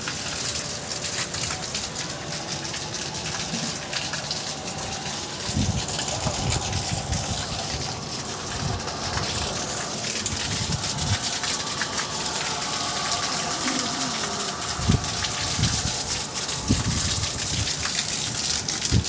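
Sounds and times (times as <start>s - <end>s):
water gushing: 0.0s - 19.0s.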